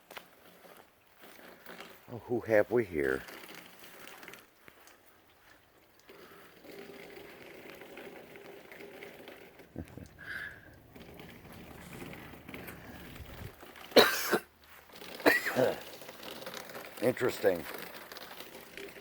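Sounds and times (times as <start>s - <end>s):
person coughing: 14.0s - 14.5s, 15.2s - 15.8s.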